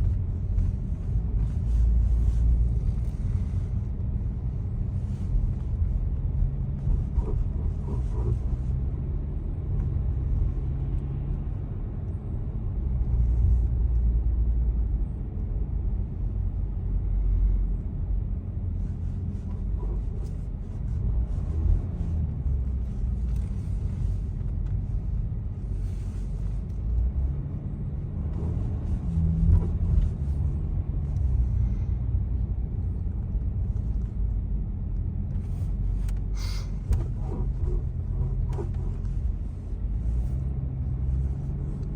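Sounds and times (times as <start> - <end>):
car driving rumble: 0.0 - 41.9.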